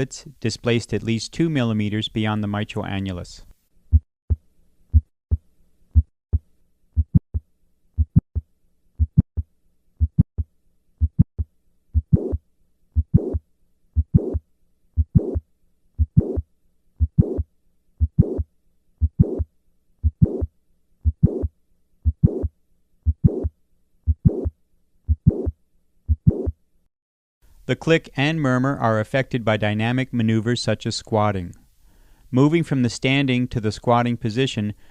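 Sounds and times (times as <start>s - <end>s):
heartbeat clicks: 3.9s - 8.4s, 9.0s - 12.4s, 13.0s - 13.4s, 14.0s - 14.4s, 15.0s - 15.4s, 16.0s - 16.4s, 17.0s - 23.5s, 24.1s - 24.5s, 25.1s - 26.6s
harsh heart murmur: 7.0s - 7.4s, 8.0s - 8.4s, 9.0s - 9.4s, 10.0s - 12.4s, 13.0s - 13.4s, 14.0s - 14.4s, 15.0s - 15.4s, 16.0s - 16.4s, 17.0s - 17.4s, 18.0s - 23.5s, 24.1s - 24.5s, 25.1s - 25.5s, 26.1s - 26.5s.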